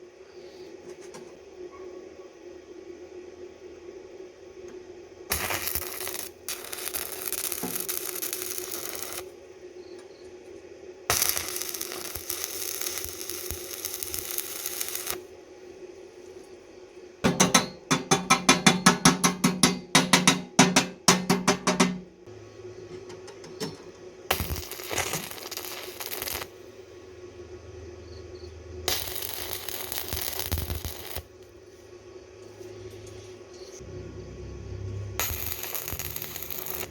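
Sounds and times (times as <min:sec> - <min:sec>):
harsh hissing: 0:05.3 - 0:09.3, 0:11.1 - 0:15.3, 0:21.1 - 0:27.4, 0:28.8 - 0:31.4, 0:33.1 - 0:36.9
hammer blows on metal: 0:17.2 - 0:22.1.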